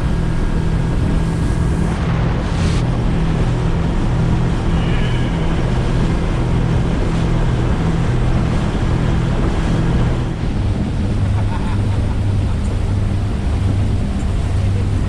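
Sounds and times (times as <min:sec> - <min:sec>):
outboard motors running: 0:00.0 - 0:15.0
wind and water rushing: 0:00.0 - 0:15.0.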